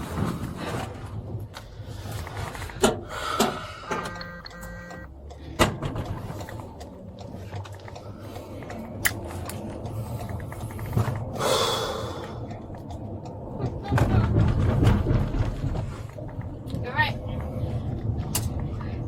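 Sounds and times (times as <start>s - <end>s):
car running hum: 1.1s - 19.0s
sharp clicks: 3.9s - 5.4s
short electronic beep: 4.0s - 5.1s.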